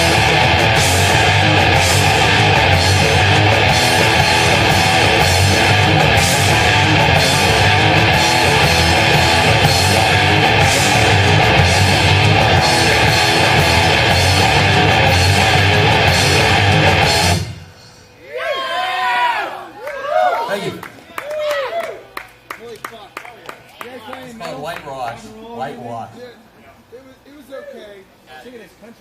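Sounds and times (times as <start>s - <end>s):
heavy metal band playing: 0.0s - 17.7s.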